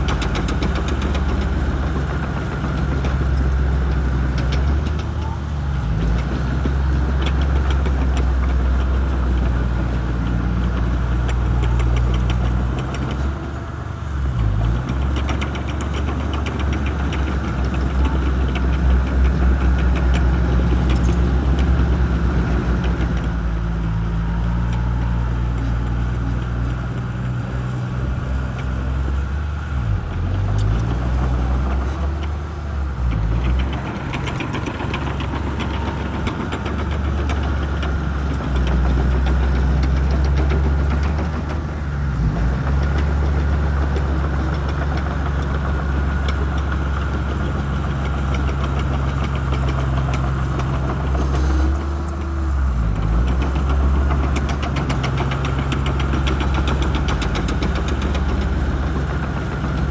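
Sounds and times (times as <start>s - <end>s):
bulldozer diesel engine running hard: 0.0s - 59.9s
fast steady clatter: 30.8s - 59.9s.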